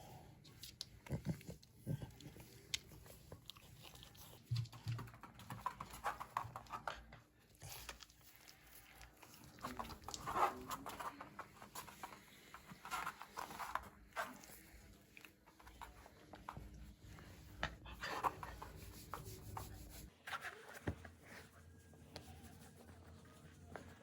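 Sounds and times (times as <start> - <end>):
dog chewing with faint crunches: 0.5 - 16.9.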